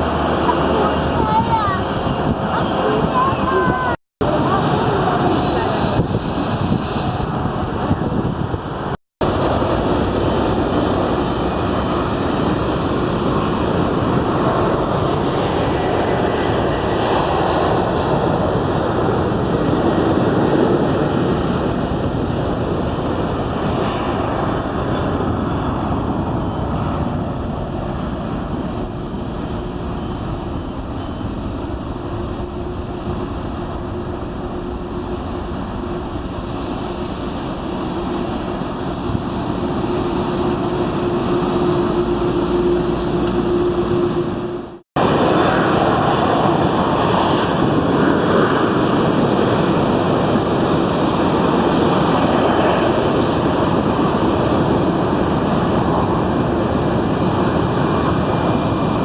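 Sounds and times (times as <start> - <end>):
jet engines rushing: 0.0 - 59.0.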